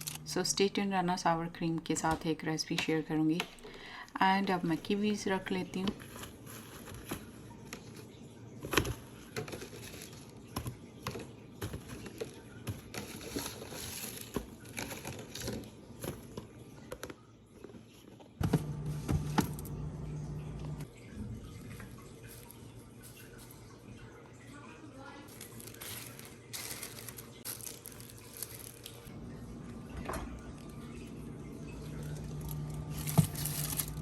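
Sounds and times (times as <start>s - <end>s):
packaging clicks and rustles: 0.0s - 0.3s, 5.9s - 19.7s, 25.3s - 29.1s, 31.7s - 34.0s
low hum: 18.4s - 20.9s, 29.1s - 34.0s.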